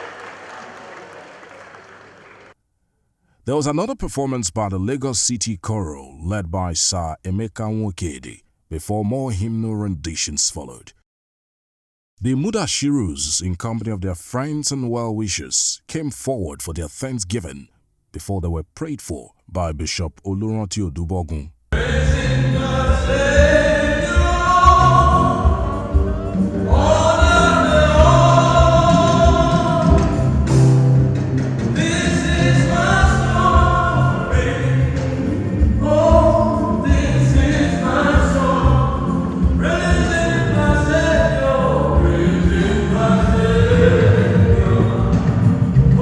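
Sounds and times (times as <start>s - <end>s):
choir singing a hymn: 21.8s - 30.8s, 31.8s - 46.0s
low accompaniment with beat: 21.8s - 31.8s, 32.4s - 46.0s.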